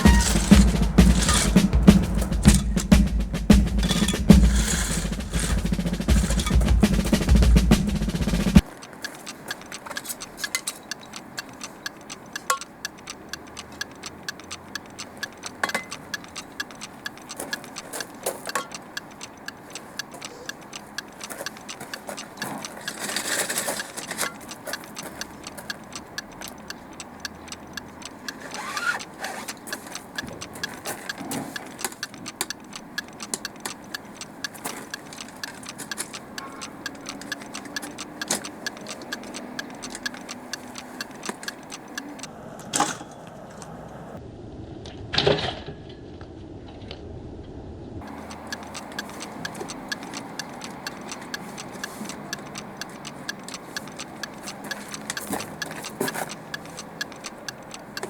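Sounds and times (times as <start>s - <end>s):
clock ticking: 0.0s - 42.3s, 48.0s - 58.0s
clicks from handling things: 8.6s - 42.2s.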